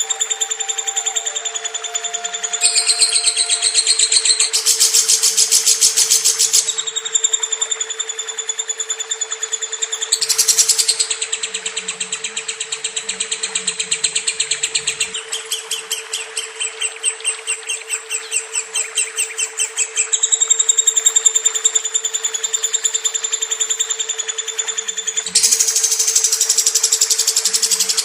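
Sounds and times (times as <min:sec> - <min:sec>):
steady hum: 0:00.0 - 0:06.8
lovebird chattering trill: 0:00.0 - 0:07.2, 0:14.2 - 0:28.0.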